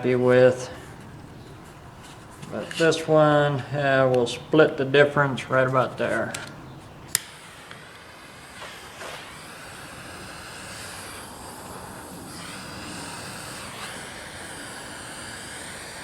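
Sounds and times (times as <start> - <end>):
flame hissing: 0.0 - 16.0
torch igniting click: 6.2 - 16.0.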